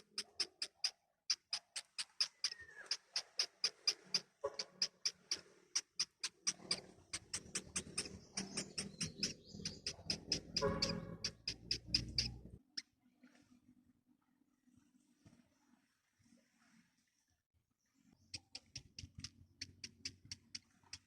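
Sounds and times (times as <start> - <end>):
nestlings cheeping: 0.1 - 12.4.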